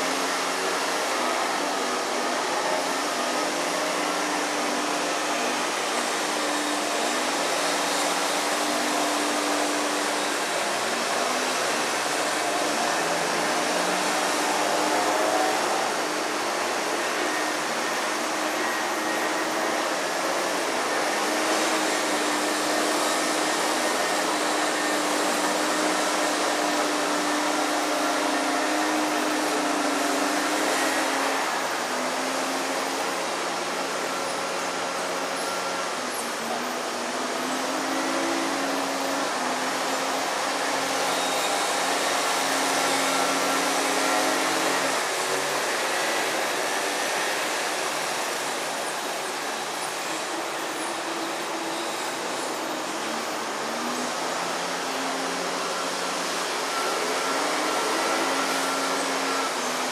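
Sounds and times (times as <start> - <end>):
even hiss: 0.0 - 59.9.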